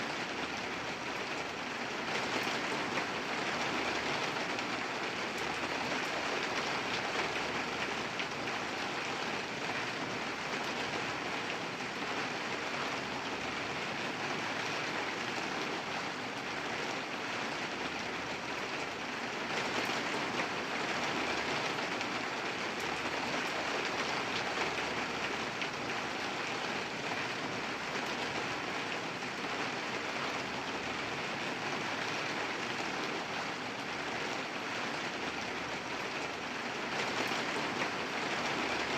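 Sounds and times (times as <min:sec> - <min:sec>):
steady rain falling: 0:00.0 - 0:38.9.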